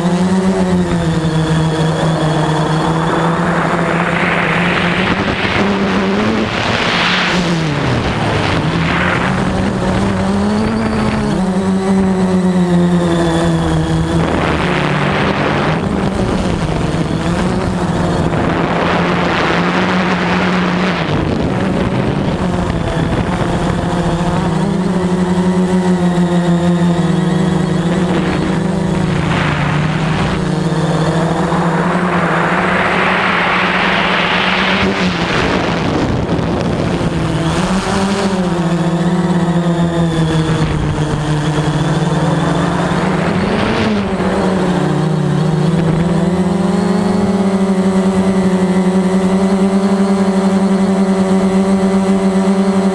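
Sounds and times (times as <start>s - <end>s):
drone propellers humming: 0.0s - 52.9s
rushing noise: 0.9s - 11.4s, 27.4s - 37.8s, 40.4s - 46.1s.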